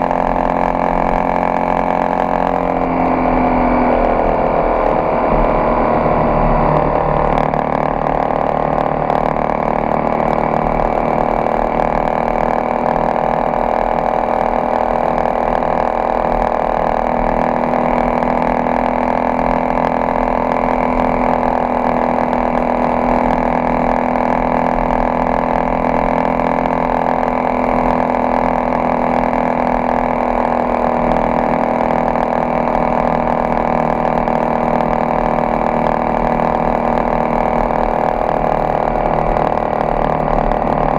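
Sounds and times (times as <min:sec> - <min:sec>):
motorcycle engine cruising: 0:00.0 - 0:40.9.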